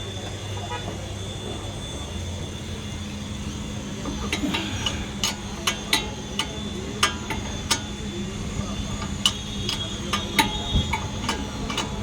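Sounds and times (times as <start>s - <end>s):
steady background hum: 0.0s - 12.0s
hand tools clicking on metal: 4.1s - 8.0s, 9.0s - 12.0s.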